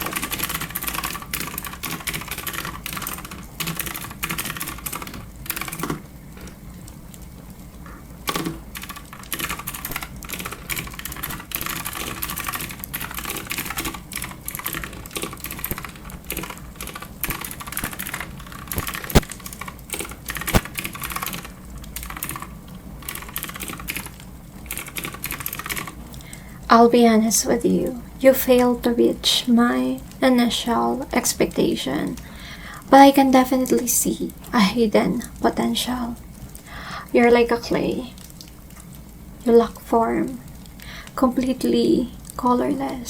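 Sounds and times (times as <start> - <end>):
fast typing on clicky keyboard: 0.0 - 7.0, 8.2 - 26.4.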